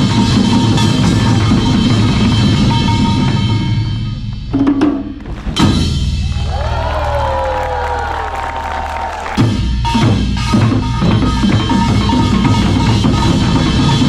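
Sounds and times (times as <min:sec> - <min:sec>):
loud drum hit: 0:00.0 - 0:07.2
dense drumming: 0:00.0 - 0:14.0.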